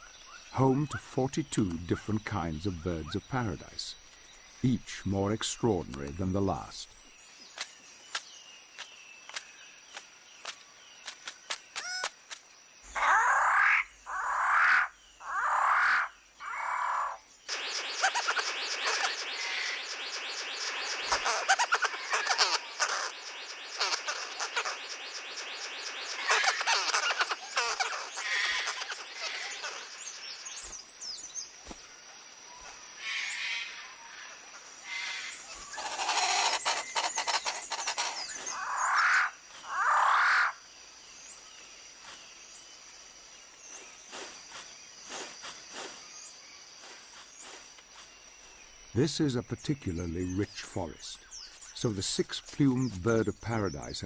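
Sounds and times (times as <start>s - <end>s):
birds: 0.0s - 54.0s
frogs: 0.0s - 54.0s
insects: 0.0s - 54.0s
bird giving loud calls: 12.9s - 30.1s, 34.8s - 40.6s.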